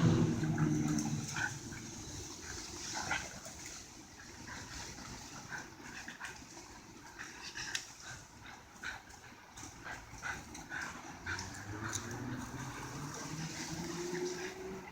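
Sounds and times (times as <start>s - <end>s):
dogs chewing branches: 0.0s - 14.9s.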